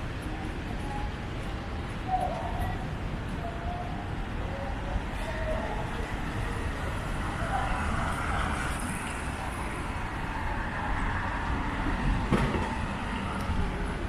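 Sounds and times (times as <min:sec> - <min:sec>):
passing vehicles rumble: 0:04.0 - 0:14.0.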